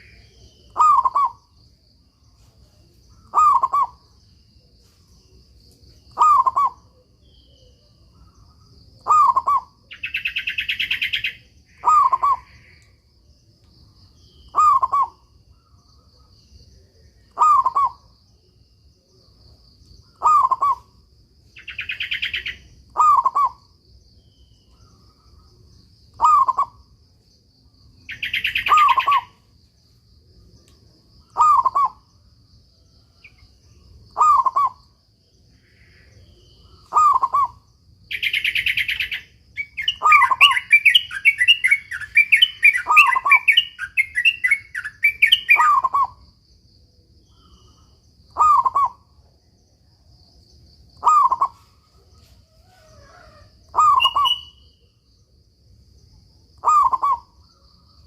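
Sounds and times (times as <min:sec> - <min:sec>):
dove cooing: 0:00.7 - 0:01.4, 0:03.2 - 0:04.0, 0:06.2 - 0:07.0, 0:09.0 - 0:09.7, 0:11.8 - 0:12.6, 0:14.5 - 0:15.2, 0:17.3 - 0:18.0, 0:20.2 - 0:20.9, 0:22.9 - 0:23.6, 0:26.2 - 0:26.8, 0:31.4 - 0:32.0, 0:34.2 - 0:34.8, 0:36.8 - 0:37.6, 0:48.4 - 0:49.0, 0:51.0 - 0:54.4, 0:56.6 - 0:57.3.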